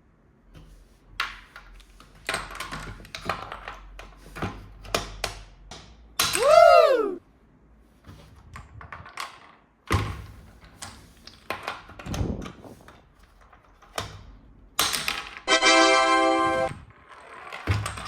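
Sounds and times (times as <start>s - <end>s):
buzzy electronic toy tone: 15.5s - 16.8s.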